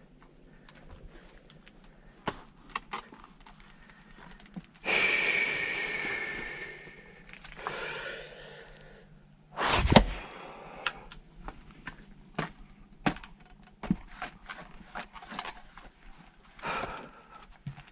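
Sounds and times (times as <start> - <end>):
person breathing out hard: 3.8 - 9.1, 16.6 - 17.5.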